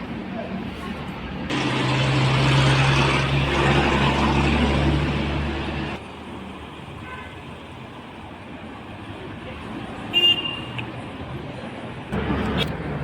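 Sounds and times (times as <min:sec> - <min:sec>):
roadside traffic noise: 0:00.0 - 0:13.0
large vehicle engine running: 0:01.5 - 0:06.0.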